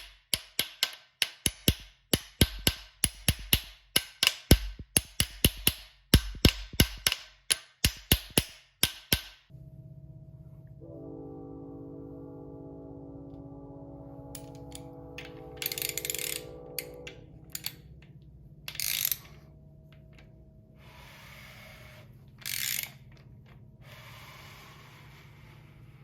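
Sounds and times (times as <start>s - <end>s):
low held tone: 9.5s - 22.3s
steady low hum: 9.5s - 26.0s
ratchet wrench clicking: 17.5s - 17.8s, 18.7s - 19.4s, 22.4s - 23.0s.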